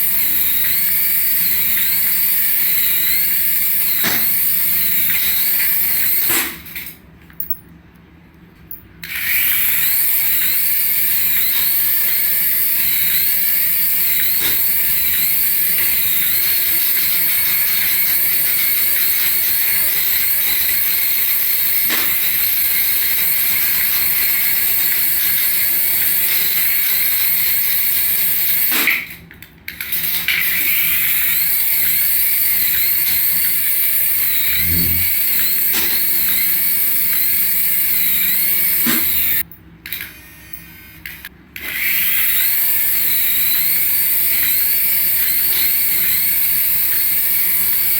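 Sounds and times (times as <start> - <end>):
electric motor whir: 0.0 - 6.3, 30.5 - 47.9
warbling electronic tone: 34.4 - 35.3.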